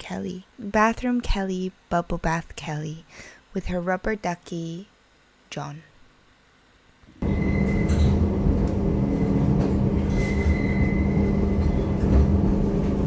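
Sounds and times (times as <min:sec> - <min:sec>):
constant hum: 0:00.0 - 0:13.0
train rumble on board: 0:07.2 - 0:13.0.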